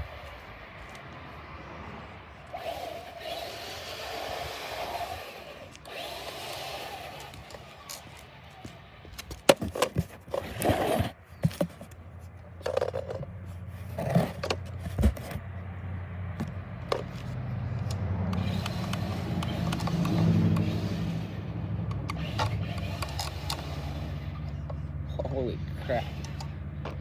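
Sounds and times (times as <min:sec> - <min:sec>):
rc car motor whirring: 0:02.4 - 0:12.0, 0:12.6 - 0:15.4, 0:16.4 - 0:27.0
knocks and scrapes on ice: 0:09.2 - 0:12.0.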